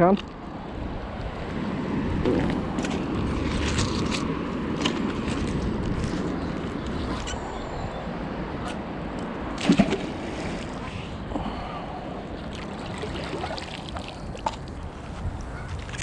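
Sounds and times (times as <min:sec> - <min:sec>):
water sloshing and trickling: 0:02.6 - 0:07.8, 0:09.2 - 0:11.1, 0:12.2 - 0:16.0.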